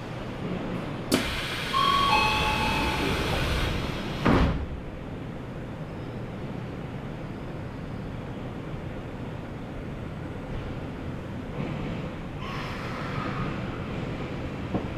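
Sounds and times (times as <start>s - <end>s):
train doors thudding shut: 1.1s - 5.0s.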